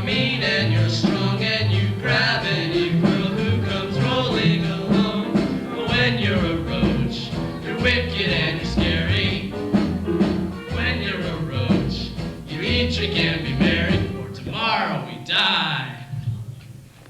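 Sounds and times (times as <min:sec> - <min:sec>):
person singing: 0:00.0 - 0:09.6
bass line: 0:00.0 - 0:14.6.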